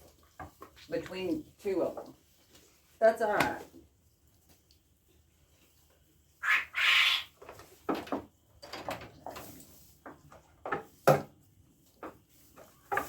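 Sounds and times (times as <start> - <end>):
loud animal cries: 6.4 - 7.3
sharp knocks and clatter: 7.5 - 9.4.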